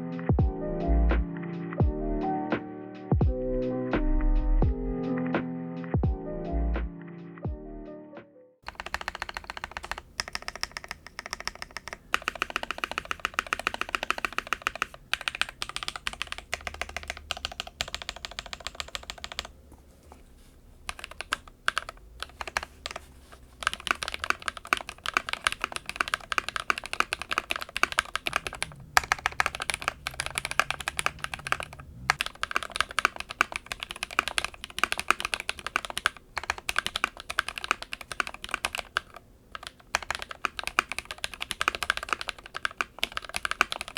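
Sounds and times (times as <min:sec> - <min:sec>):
fast typing on mechanical keyboard: 0:08.6 - 0:19.6, 0:20.8 - 0:43.9.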